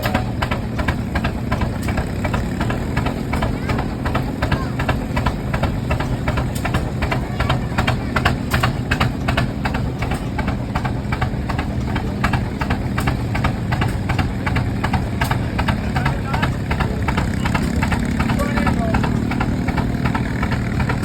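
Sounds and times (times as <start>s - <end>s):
tractor engine exhaust beat: 0.0s - 21.0s.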